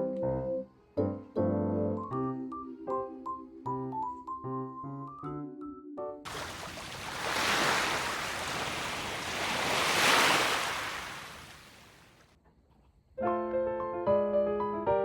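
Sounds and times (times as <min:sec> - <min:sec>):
rushing wind and rain: 0:06.3 - 0:12.2.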